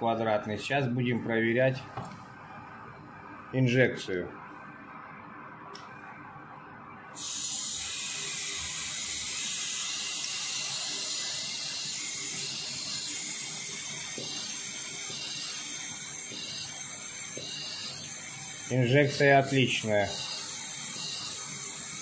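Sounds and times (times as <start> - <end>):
oxygen hissing through cutting torch: 7.2 - 22.0.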